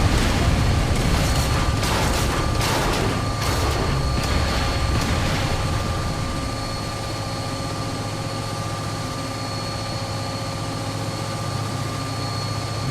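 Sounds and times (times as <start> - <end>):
diesel locomotive engine idling: 0.0 - 8.8.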